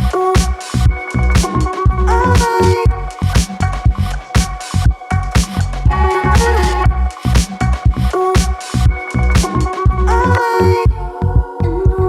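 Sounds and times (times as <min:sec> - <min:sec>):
music with punchy bass beat: 0:00.0 - 0:12.0.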